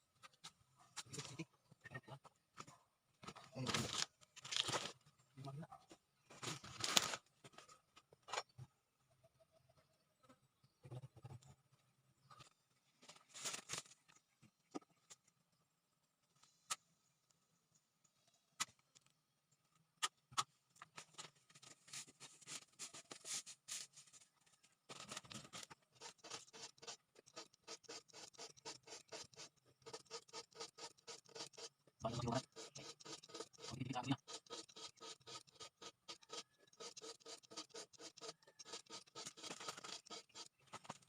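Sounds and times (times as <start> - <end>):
rasping scraping strokes: 25.5 - 41.0.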